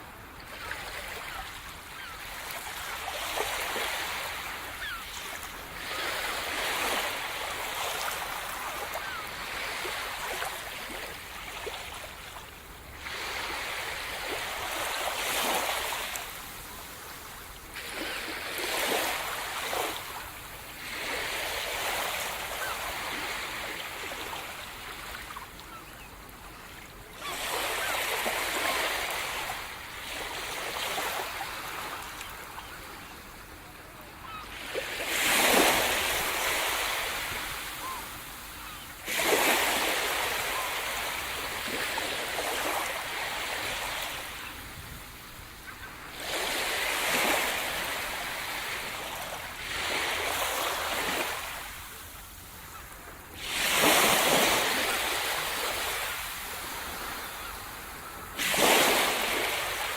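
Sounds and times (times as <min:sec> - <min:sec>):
sea surf breaking on shore: 0:53.3 - 0:59.9.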